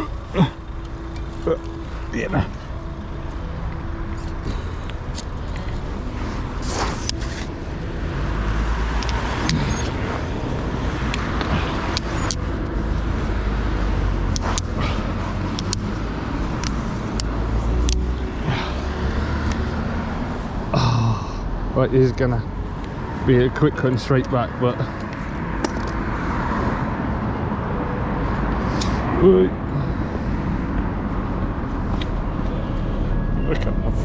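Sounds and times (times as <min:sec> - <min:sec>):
road traffic rumble: 0:00.0 - 0:34.0.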